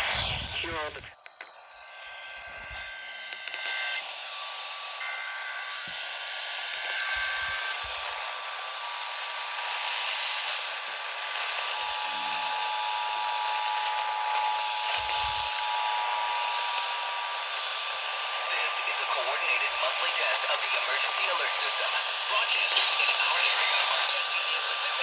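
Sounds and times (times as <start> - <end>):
radio static hiss: 0.0 - 13.2, 14.4 - 25.0.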